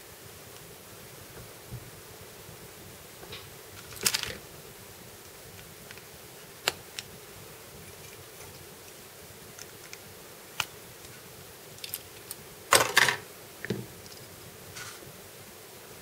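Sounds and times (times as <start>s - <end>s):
plastic parts clicking: 3.8s - 4.4s
plastic pieces clattering: 3.8s - 4.4s, 12.7s - 13.2s.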